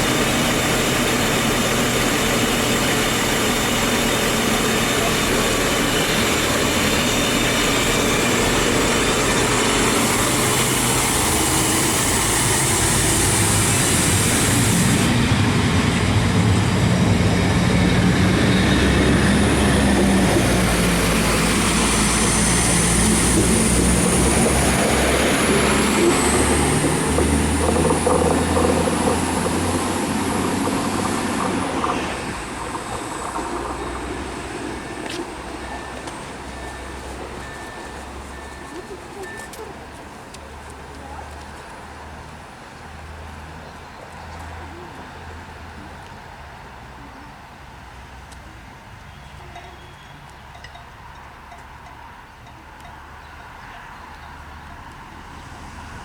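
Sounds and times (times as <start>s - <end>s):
diesel train engines running: 0.0s - 56.0s
high wheel squeal: 17.3s - 39.6s.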